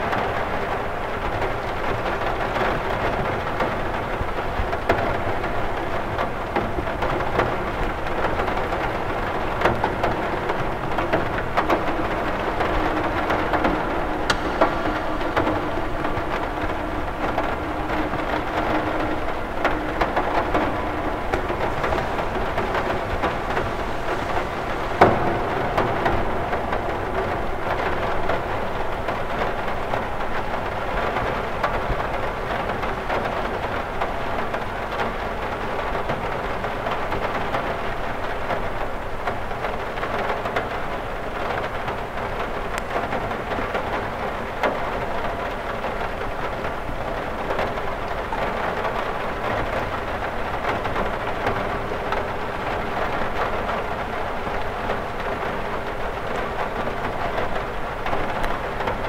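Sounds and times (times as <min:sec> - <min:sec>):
rain on a window: 0:00.0 - 0:59.0
sharp knock of a drop: 0:14.3 - 0:16.4.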